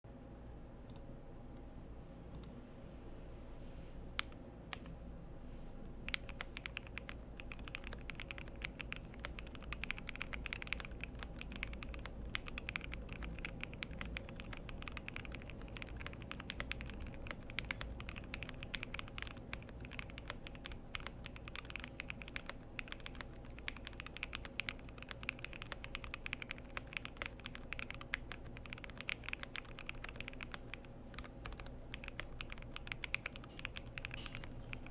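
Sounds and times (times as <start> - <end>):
typing on mechanical keyboard: 6.1 - 34.9.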